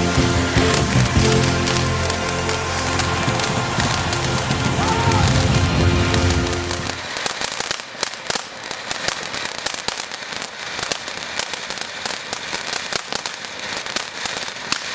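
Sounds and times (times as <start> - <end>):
music playing: 0.0 - 7.1
fireworks crackling and popping: 0.0 - 14.9.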